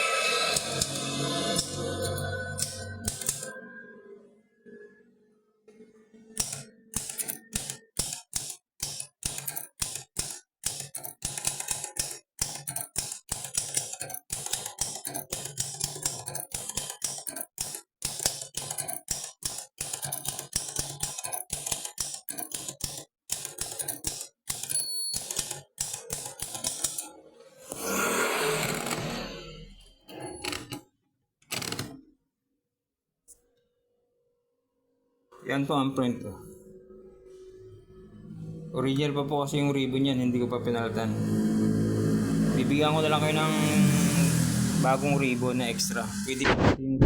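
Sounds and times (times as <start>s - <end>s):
typewriter keys clacking: 6.4s - 27.1s
typewriter bell ringing: 24.6s - 25.5s.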